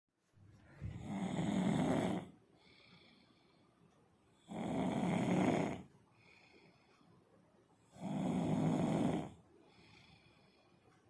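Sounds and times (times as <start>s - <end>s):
faint breathing: 0.6s - 7.4s, 8.6s - 11.0s
person snoring: 0.9s - 2.4s, 4.4s - 5.9s, 7.9s - 10.3s.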